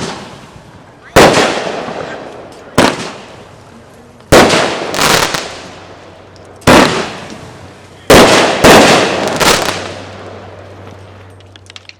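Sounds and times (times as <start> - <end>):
firework bangs: 0.0 - 3.6, 4.3 - 6.0, 6.6 - 10.6.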